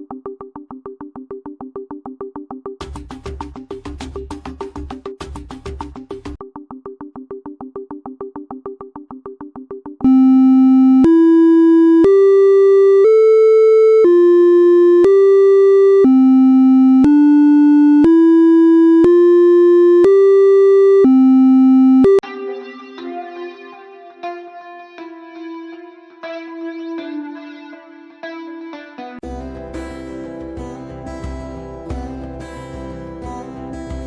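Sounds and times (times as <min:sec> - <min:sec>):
pulsing two-note electronic beep: 0:10.0 - 0:22.2
synthesizer tune of held tones: 0:10.0 - 0:22.2
quiet guitar music: 0:26.9 - 0:34.0.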